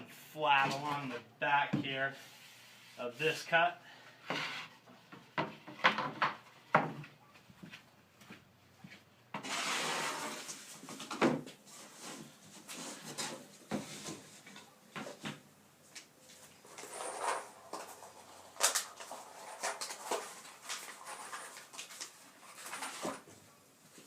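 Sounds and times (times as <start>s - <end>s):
plywood rubbing or sliding: 4.3s - 4.8s, 9.4s - 10.9s.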